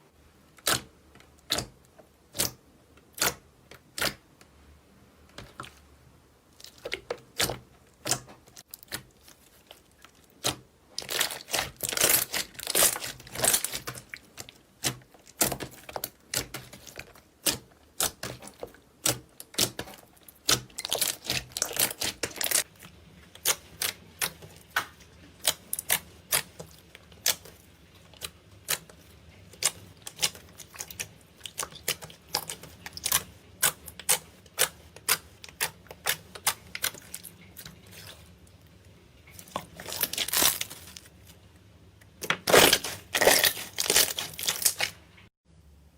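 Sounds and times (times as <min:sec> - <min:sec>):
slime squishing and popping: 0:06.6 - 0:22.7, 0:39.3 - 0:41.1, 0:42.2 - 0:45.0.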